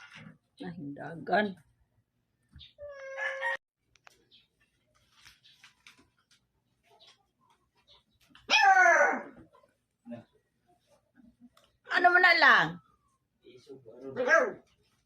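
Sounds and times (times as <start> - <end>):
puppy yelping: 8.4 - 9.5, 14.2 - 14.7.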